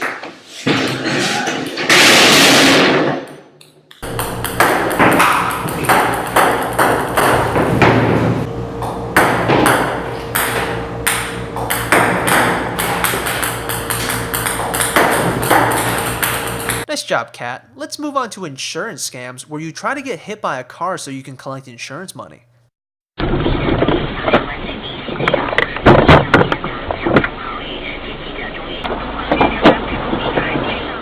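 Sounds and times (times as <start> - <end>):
table tennis ball pinging: 4.0 - 7.9, 9.2 - 16.9
low hum: 4.0 - 16.9.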